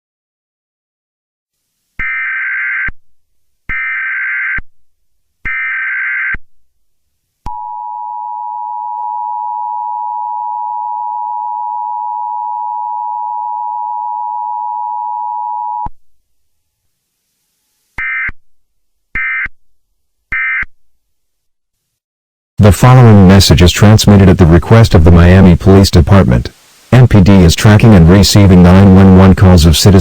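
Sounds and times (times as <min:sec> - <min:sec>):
two-tone attention signal: 0:07.5 - 0:15.9.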